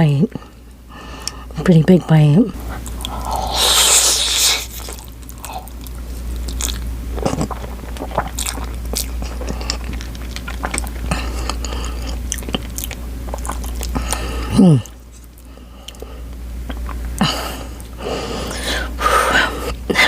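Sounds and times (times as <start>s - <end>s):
low steady hum: 0.0s - 20.0s
wet chewing and mouth smacks: 2.6s - 18.0s.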